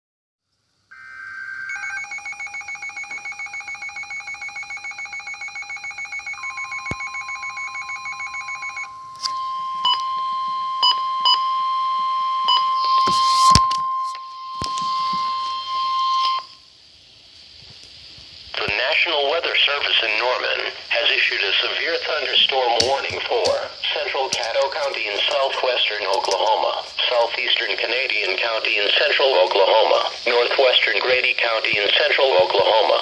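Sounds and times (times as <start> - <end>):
pulsing electronic alarm: 0.9 - 16.6
steady high tone: 0.9 - 16.6.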